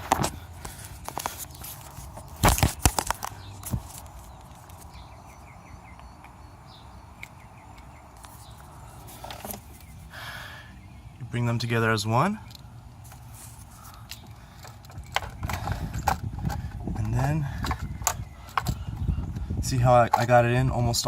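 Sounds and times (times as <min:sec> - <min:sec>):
sharp clicks and knocks of parts: 0:00.0 - 0:05.0, 0:12.4 - 0:19.4.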